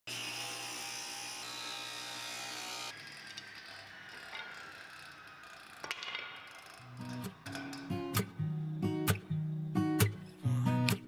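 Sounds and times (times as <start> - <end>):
power tool motor winding down: 0.1 - 5.8.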